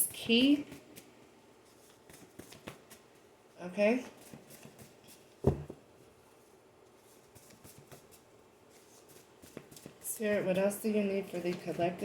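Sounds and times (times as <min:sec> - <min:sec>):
cards rustling and ticking: 0:00.7 - 0:03.1.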